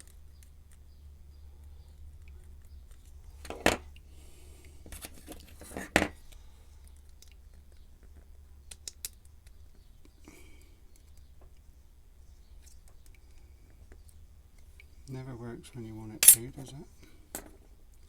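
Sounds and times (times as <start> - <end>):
metal tool clicks in lock: 16.2 - 16.5.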